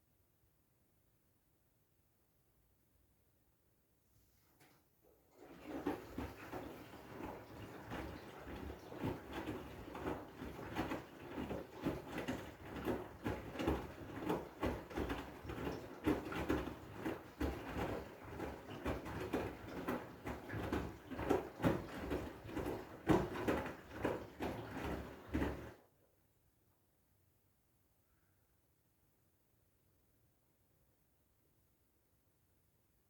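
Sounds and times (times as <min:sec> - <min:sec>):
washing machine drum tumbling: 0:05.4 - 0:25.8.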